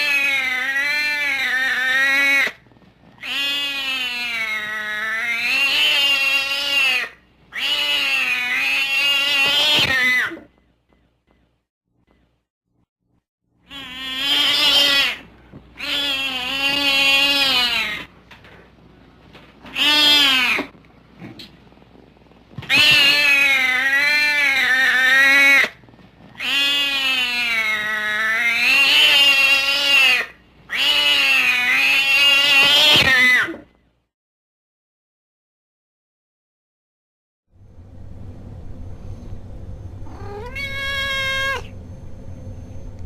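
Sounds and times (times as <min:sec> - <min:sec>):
cat meowing: 0:00.0 - 0:02.6, 0:03.2 - 0:10.5, 0:13.7 - 0:18.1, 0:19.6 - 0:20.7, 0:22.6 - 0:25.7, 0:26.4 - 0:33.6, 0:40.1 - 0:41.7.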